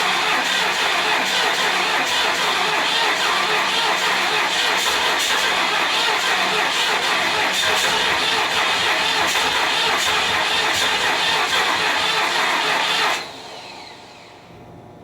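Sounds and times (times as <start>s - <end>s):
engine winding down whine: 0.0s - 14.7s.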